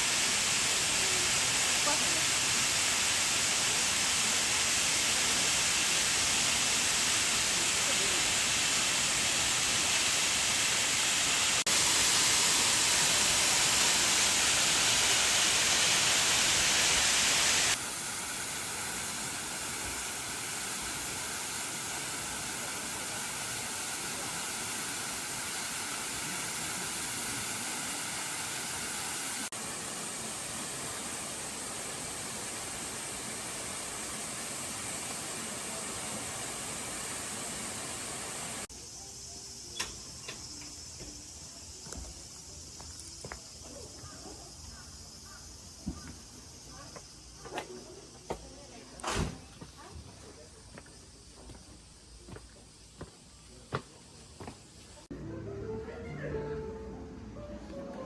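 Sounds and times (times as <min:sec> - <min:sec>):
waterfall rushing: 0:00.0 - 0:38.7.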